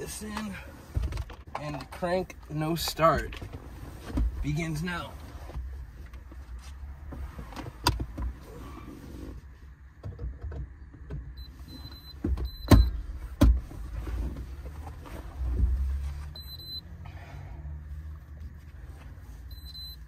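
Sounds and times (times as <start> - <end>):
high electronic beeps: 19.5 - 20.0.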